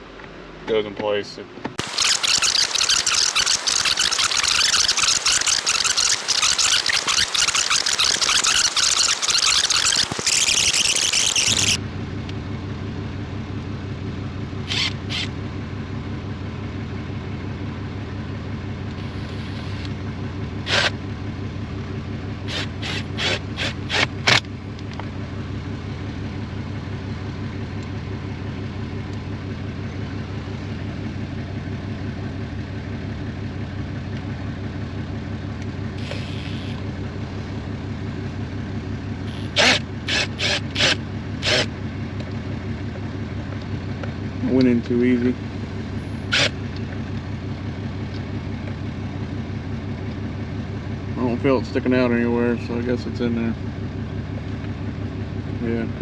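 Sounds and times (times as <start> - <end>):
pickup engine idling: 24.4 - 56.0.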